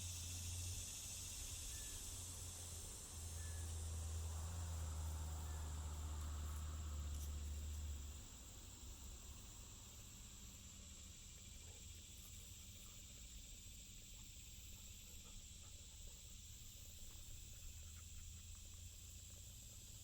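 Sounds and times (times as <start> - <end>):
high-pitched insect chorus: 0.0 - 20.0
faint ticks: 6.0 - 8.0.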